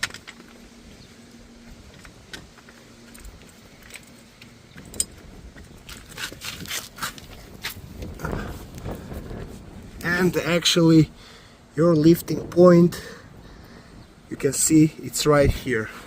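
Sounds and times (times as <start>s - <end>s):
car jack clicking and rattling: 0.0s - 0.6s.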